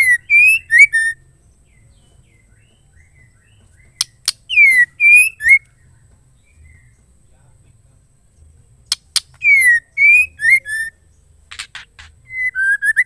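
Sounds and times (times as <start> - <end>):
bird whistling: 0.0 - 5.8, 8.9 - 13.0
bird sharp clicks: 3.6 - 5.8, 8.9 - 10.6, 11.5 - 12.6.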